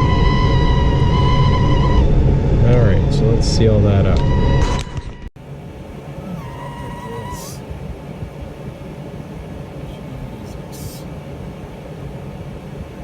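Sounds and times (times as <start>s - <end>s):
thin air whistle: 0.0s - 2.2s, 6.2s - 7.7s
short hisses: 6.2s - 7.7s.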